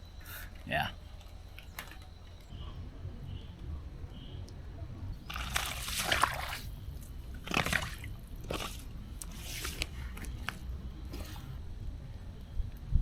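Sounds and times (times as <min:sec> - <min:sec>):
water dripping: 0:01.0 - 0:11.2
water splashing: 0:05.1 - 0:11.5.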